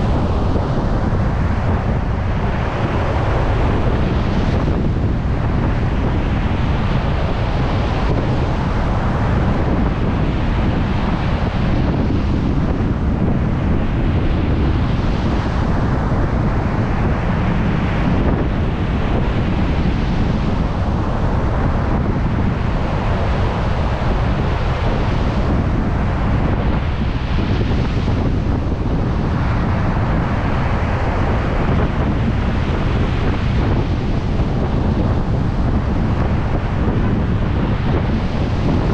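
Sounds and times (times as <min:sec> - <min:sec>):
surf breaking on a beach: 0:00.0 - 0:38.9
wind buffeting microphone: 0:00.0 - 0:38.9.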